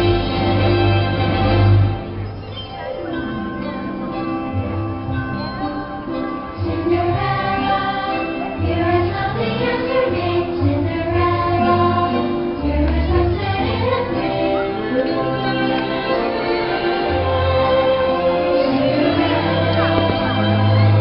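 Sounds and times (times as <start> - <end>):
orchestral music: 0.0 - 21.0
choir singing sustained notes: 6.3 - 21.0.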